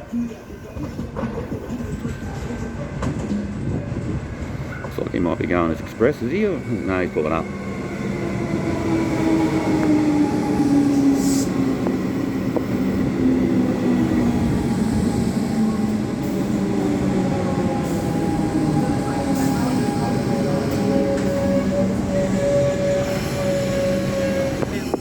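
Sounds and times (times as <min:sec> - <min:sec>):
electric train braking: 0:06.8 - 0:25.0.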